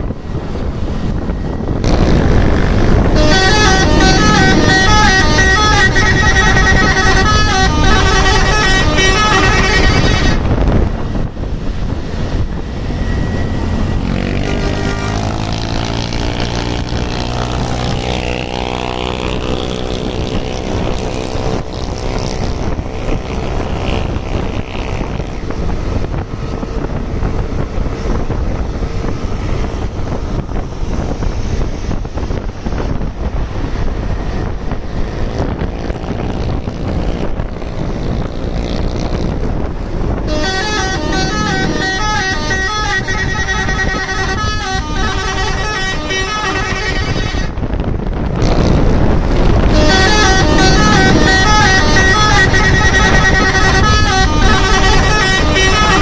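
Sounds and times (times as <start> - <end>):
traffic and road noise: 0.0 - 56.0
vehicle engine revving: 0.9 - 11.0, 11.7 - 26.2, 29.0 - 56.0
bus horn melody: 1.8 - 10.8, 13.3 - 25.2, 40.0 - 56.0.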